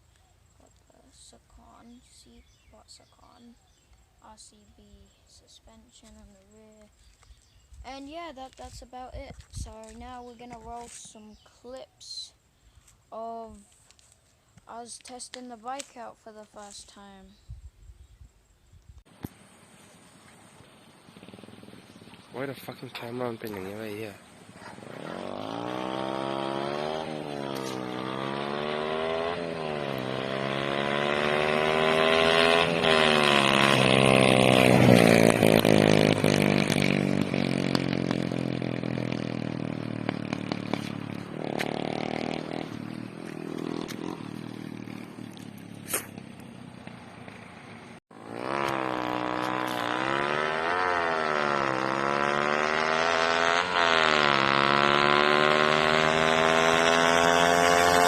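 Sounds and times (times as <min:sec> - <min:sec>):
motorcycle engine revving: 0:19.1 - 0:58.0.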